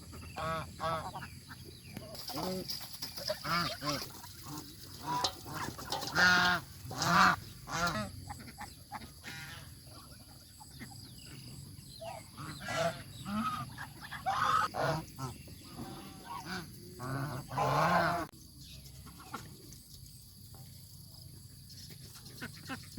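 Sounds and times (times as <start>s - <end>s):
geese honking: 0.0s - 9.7s, 12.0s - 18.3s.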